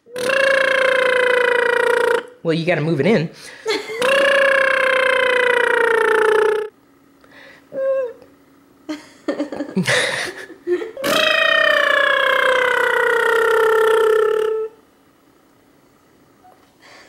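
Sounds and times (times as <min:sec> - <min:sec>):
person making playful vocal noises: 0:00.0 - 0:02.4, 0:03.9 - 0:06.7, 0:07.7 - 0:08.3, 0:10.9 - 0:14.8.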